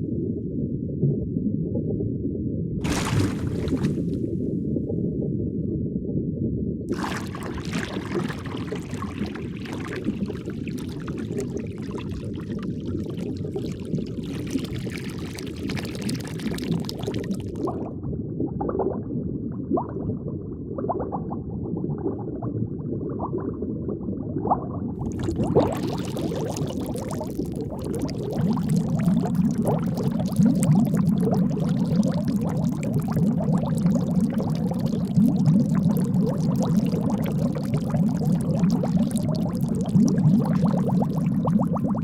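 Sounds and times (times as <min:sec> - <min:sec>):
low underwater rumble: 0:00.0 - 0:15.0, 0:24.9 - 0:42.0
water bubbling and fizzing: 0:02.8 - 0:04.4, 0:06.9 - 0:17.9, 0:25.0 - 0:42.0.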